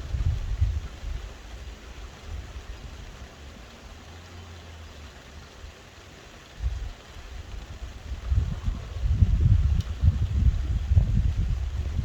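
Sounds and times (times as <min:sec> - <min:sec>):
wind buffeting microphone: 0:00.0 - 0:01.6, 0:06.6 - 0:12.0
soft rain hiss: 0:00.0 - 0:12.0.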